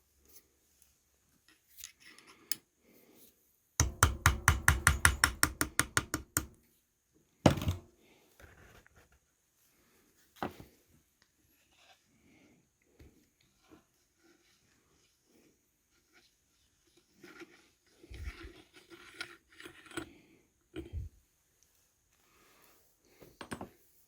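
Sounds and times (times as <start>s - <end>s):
hammer tapping metal punch: 3.8s - 6.6s.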